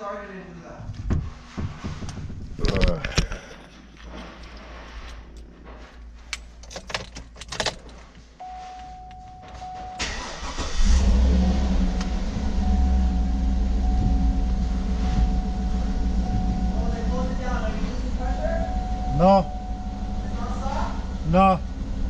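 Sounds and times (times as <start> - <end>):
car engine starting and idling: 6.1 - 22.0
keys jangling: 6.4 - 8.2.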